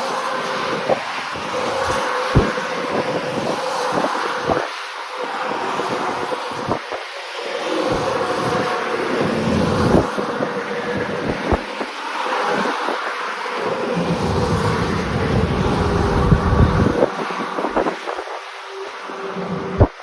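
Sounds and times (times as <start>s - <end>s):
wind buffeting microphone: 7.8s - 20.0s
vehicle hum: 13.5s - 20.0s.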